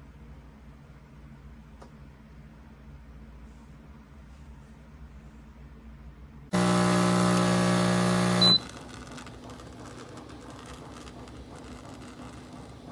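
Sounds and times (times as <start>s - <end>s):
espresso machine pump buzzing: 6.5s - 12.9s
short high beep: 8.3s - 8.6s.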